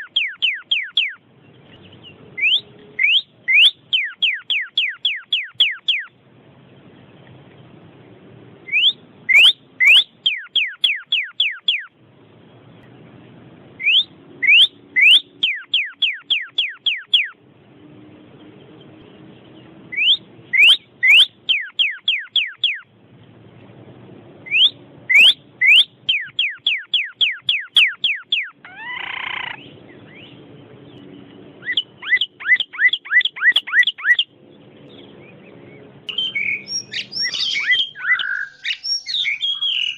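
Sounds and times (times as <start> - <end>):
songbird whistled notes: 0.0 - 1.2, 2.4 - 6.1, 8.7 - 11.9, 13.8 - 17.4, 19.9 - 22.8, 24.5 - 30.4, 31.6 - 34.3, 35.7 - 39.9
harsh drawn-out bird call: 0.0 - 1.3, 1.9 - 6.2, 8.6 - 12.0, 13.8 - 17.4, 19.9 - 22.9, 24.4 - 30.4, 31.6 - 34.3, 35.3 - 39.9.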